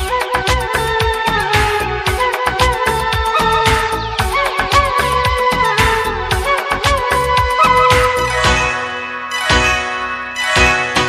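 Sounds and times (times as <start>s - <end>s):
film song instrumental passage: 0.0s - 11.0s
bell-like chimes: 8.2s - 11.0s.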